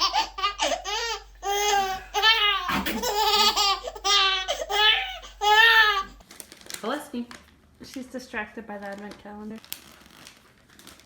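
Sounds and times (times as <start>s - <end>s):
person laughing hard: 1.6s - 4.1s.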